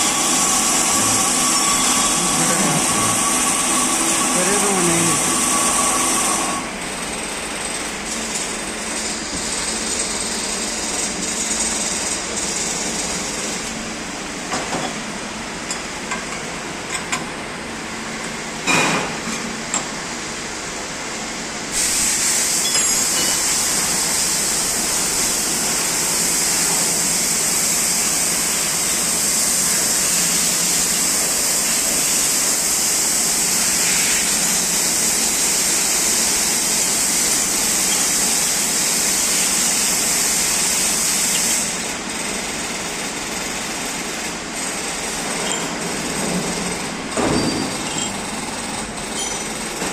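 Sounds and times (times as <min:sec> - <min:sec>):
loud steady hiss: 0:00.0 - 0:06.8, 0:21.6 - 0:45.4
machine running: 0:00.0 - 0:10.2.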